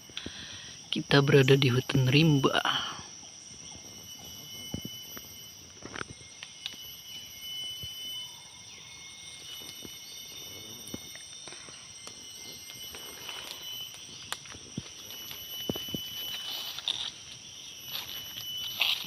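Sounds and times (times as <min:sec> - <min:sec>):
insect chorus: 0:00.0 - 0:19.0
snaps and crunches on forest floor: 0:12.9 - 0:19.0.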